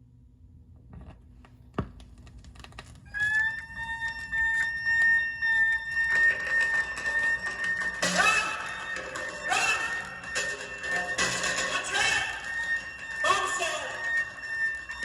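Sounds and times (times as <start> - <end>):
vinyl record crackle: 1.6 - 15.0
high sustained note: 3.2 - 15.0.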